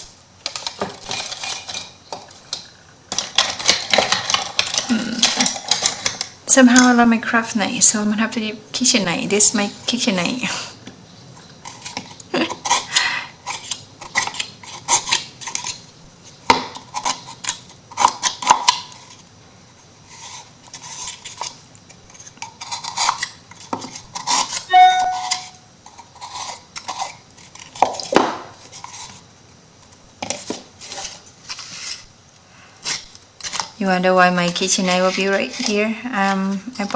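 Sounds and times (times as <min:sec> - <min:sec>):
metal blade ringing: 0:24.7 - 0:25.6.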